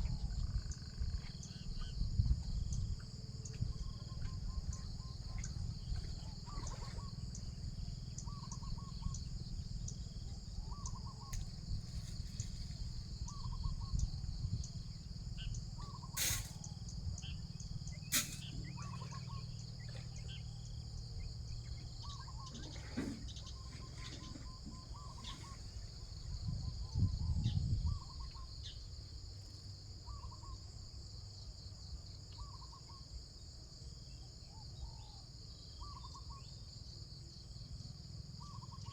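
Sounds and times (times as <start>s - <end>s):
high-pitched insect chorus: 0.0s - 38.9s
bird repeating short call: 16.1s - 16.7s.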